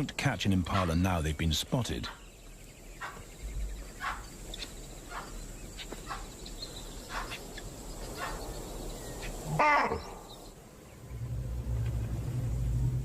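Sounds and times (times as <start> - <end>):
animal alarm calls: 3.0 - 3.3, 3.9 - 6.4, 9.2 - 10.3.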